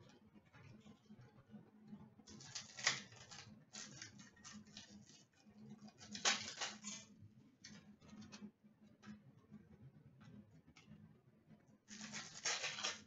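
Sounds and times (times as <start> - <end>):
trading cards rustling: 11.9 - 13.0.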